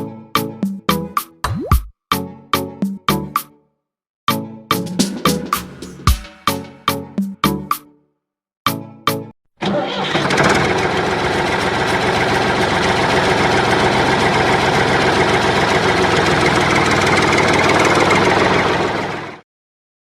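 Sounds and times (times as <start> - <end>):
music: 0.0 - 9.4
engine chugging: 10.2 - 19.4.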